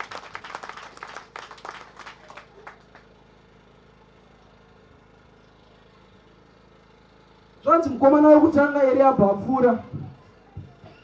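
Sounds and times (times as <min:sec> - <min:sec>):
congregation clapping: 0:00.0 - 0:03.1.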